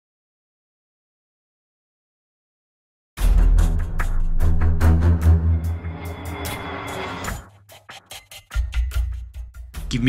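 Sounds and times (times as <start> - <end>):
ominous dramatic music: 3.2 - 7.8.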